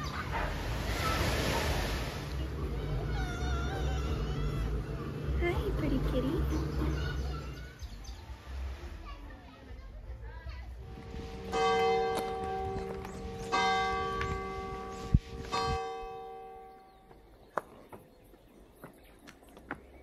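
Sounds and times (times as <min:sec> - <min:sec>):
church bell tolling: 0:11.2 - 0:17.2.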